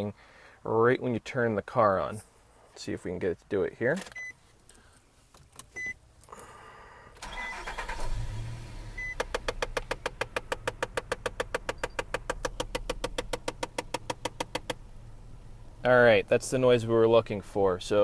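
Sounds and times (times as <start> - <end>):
car engine starting and idling: 5.5 - 18.0
fast even clicking behind dash: 9.1 - 14.9.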